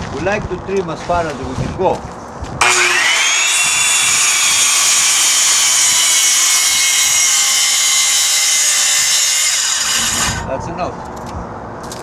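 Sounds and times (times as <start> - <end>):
circular saw cutting plywood: 2.6 - 10.5.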